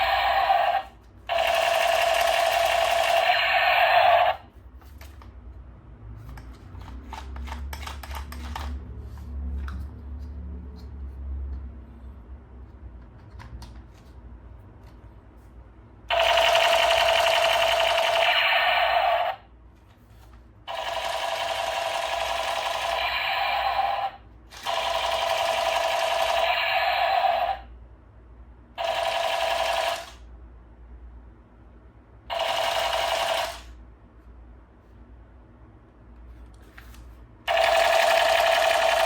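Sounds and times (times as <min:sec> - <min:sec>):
toy gun rapid rattle: 0:00.0 - 0:04.4, 0:16.1 - 0:19.4, 0:20.7 - 0:27.6, 0:28.8 - 0:30.2, 0:32.3 - 0:33.8, 0:37.5 - 0:39.0.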